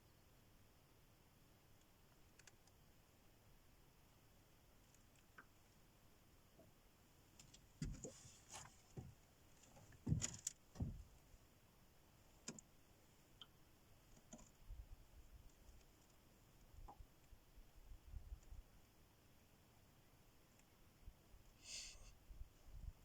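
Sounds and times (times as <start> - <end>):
faint knocks and clicks: 7.4 - 11.1.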